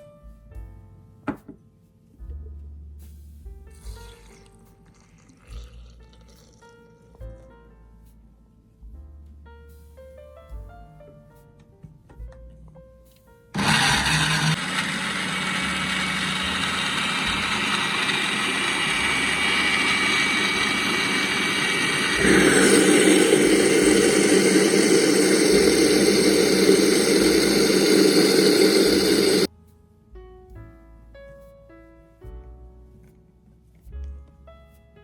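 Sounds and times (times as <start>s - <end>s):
electric blender motor running: 13.6s - 29.5s.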